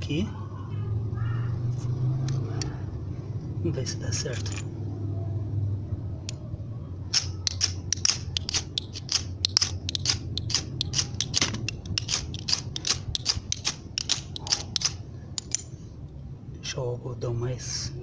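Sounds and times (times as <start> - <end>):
fire steel scraping: 7.1 - 15.7.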